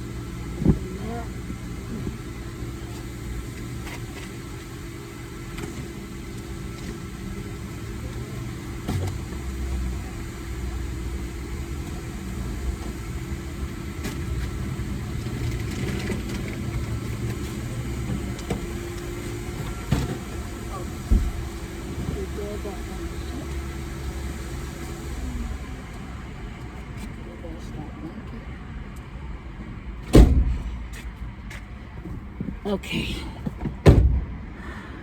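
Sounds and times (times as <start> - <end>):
car engine rumbling: 0.0 - 35.0.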